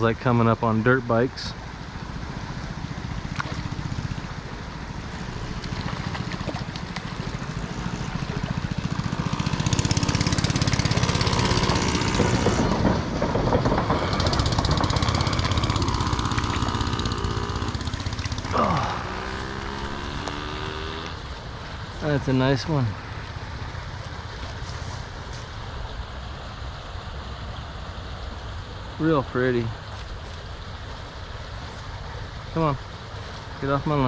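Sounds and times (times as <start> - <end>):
dirt bike engines revving: 2.0 - 25.4.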